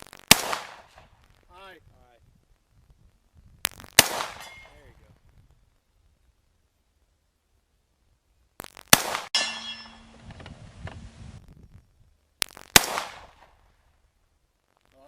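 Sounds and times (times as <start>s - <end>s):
rifle shots: 0.3s - 1.1s, 3.9s - 4.8s, 8.9s - 10.2s, 12.7s - 13.5s
steel target ringing clang: 9.4s - 10.2s.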